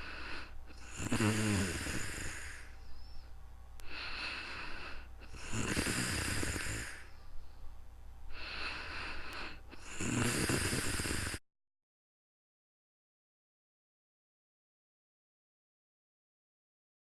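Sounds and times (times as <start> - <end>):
person snoring: 0.0 - 2.8, 3.8 - 7.1, 8.3 - 11.4.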